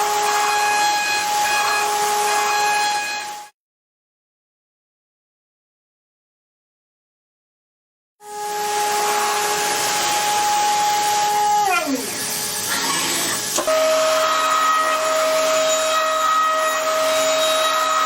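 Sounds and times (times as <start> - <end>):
machine spindle whining: 8.8 - 18.0.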